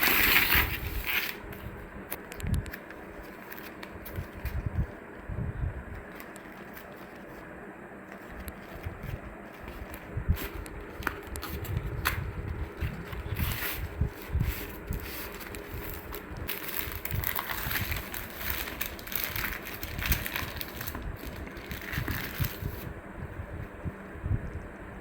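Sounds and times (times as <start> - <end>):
food packaging rustling: 2.7 - 5.0, 6.0 - 7.5, 8.1 - 22.9.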